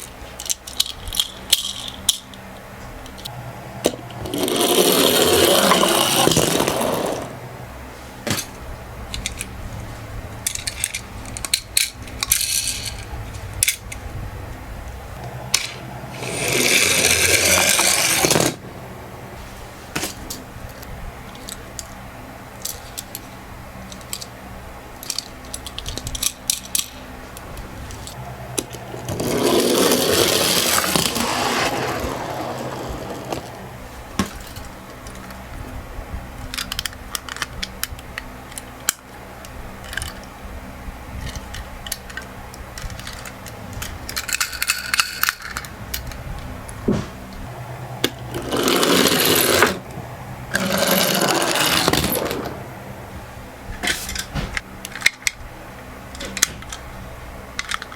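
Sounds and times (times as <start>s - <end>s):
toy cars rolling down a slope: 4.2s - 7.4s, 15.5s - 18.6s, 28.6s - 33.6s, 48.0s - 49.8s, 50.5s - 52.6s
clicks of toy cars handled: 57.6s - 57.9s.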